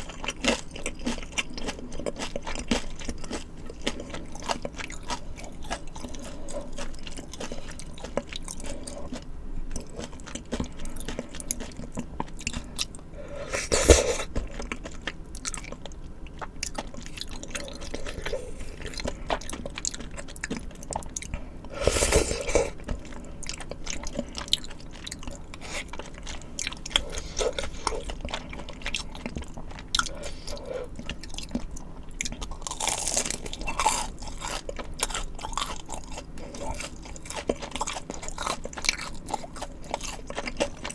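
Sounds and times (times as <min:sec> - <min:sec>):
wet chewing mouth sounds: 0:00.0 - 0:40.9
crunchy bites: 0:16.7 - 0:40.9.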